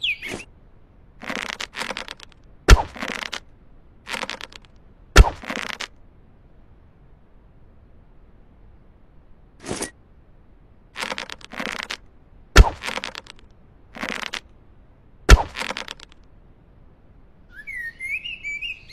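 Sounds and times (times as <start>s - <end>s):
birds chirping: 0.0s - 0.5s, 17.5s - 18.9s
arrow swishes: 0.2s - 0.5s, 9.6s - 9.9s
sharp bow cracks: 5.2s - 5.9s.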